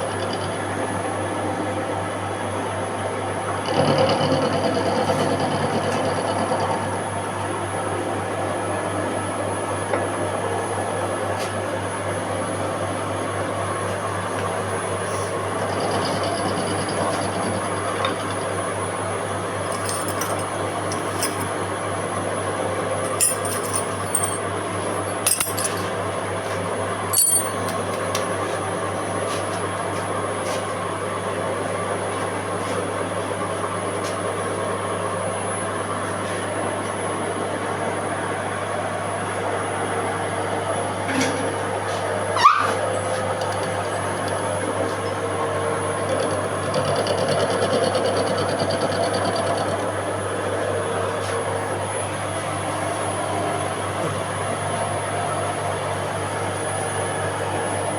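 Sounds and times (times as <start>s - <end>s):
machine tool humming and whining: 0.0s - 11.0s, 12.5s - 22.5s, 42.8s - 57.9s
short metallic clinks: 25.3s - 25.8s, 27.2s - 27.8s.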